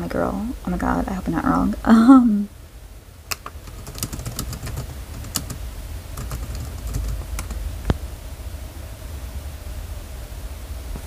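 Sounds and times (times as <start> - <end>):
computer keyboard typing: 3.3 - 5.6, 6.2 - 7.6.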